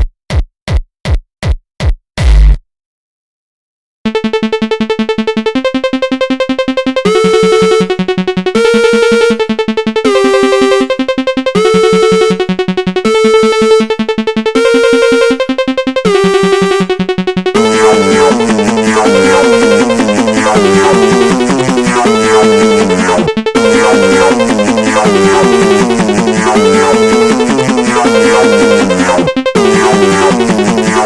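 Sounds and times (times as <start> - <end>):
pulsing synth tone: 8.6 - 31.0.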